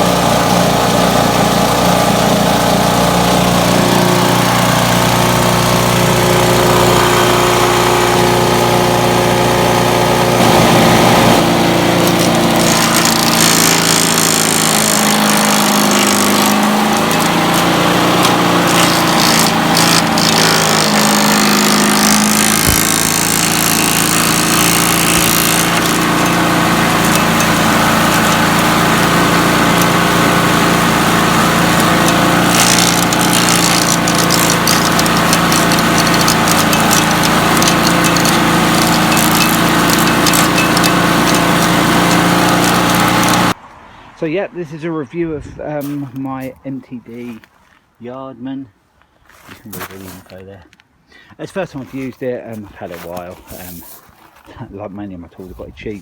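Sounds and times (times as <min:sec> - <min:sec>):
garden vacuum engine running: 0:00.0 - 0:43.6.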